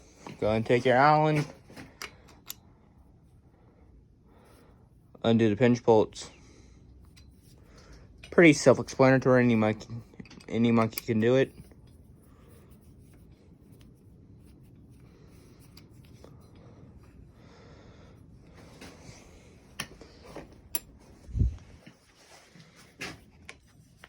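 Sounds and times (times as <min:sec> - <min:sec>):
sharp metal clicks: 0:10.1 - 0:11.2.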